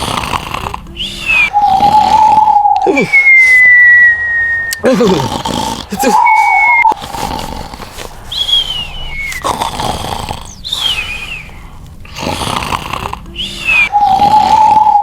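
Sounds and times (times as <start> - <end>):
man snoring comically: 0.0 - 15.0
sliding whistles: 1.0 - 4.9, 6.0 - 7.0, 8.0 - 11.9, 13.4 - 15.0.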